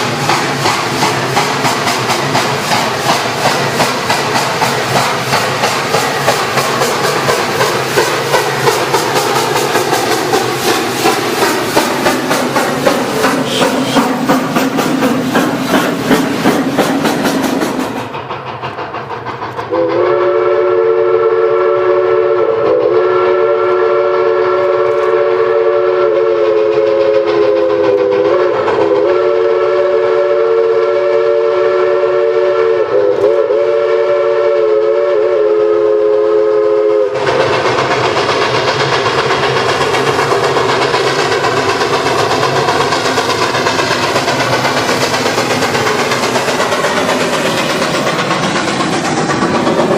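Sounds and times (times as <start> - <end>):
train running on rails: 0.0 - 49.9
steam locomotive chime whistle: 13.2 - 14.3, 19.7 - 37.3.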